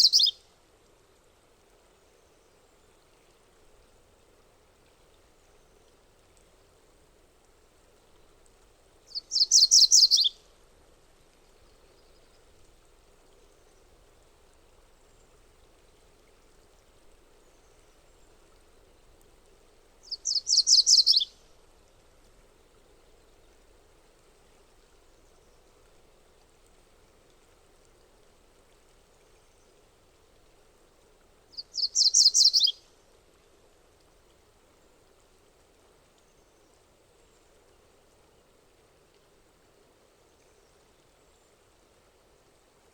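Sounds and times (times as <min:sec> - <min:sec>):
bird singing: 0:00.0 - 0:00.4, 0:09.1 - 0:10.3, 0:20.0 - 0:21.3, 0:31.6 - 0:32.8
faint steady hiss: 0:00.0 - 0:42.9.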